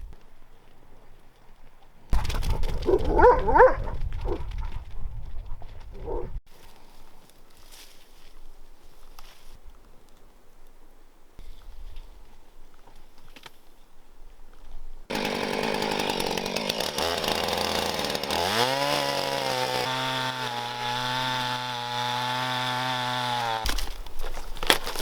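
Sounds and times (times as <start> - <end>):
chainsaw engine running: 15.1 - 23.8.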